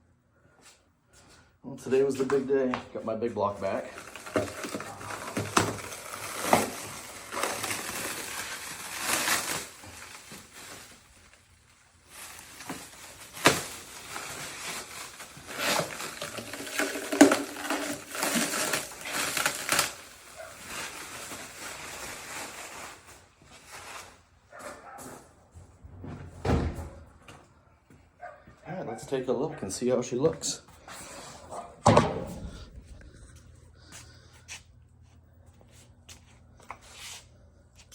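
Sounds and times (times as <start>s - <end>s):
rustling and crinkling: 2.1s - 28.6s.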